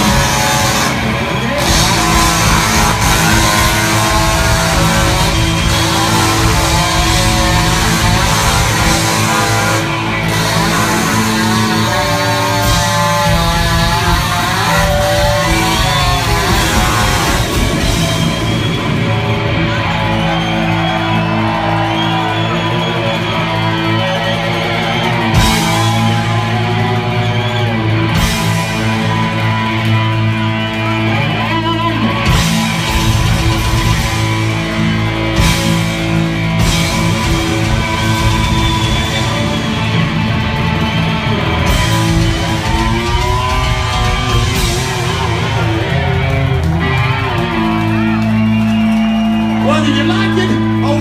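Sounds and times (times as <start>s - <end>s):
distorted electric guitars: 0.0s - 51.0s
drums: 0.0s - 51.0s
live hard rock band: 0.0s - 51.0s.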